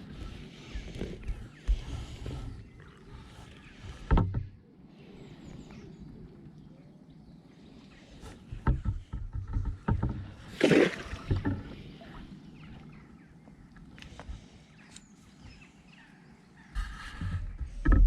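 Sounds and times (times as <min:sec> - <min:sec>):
water splashing and knocking: 0:08.5 - 0:12.1.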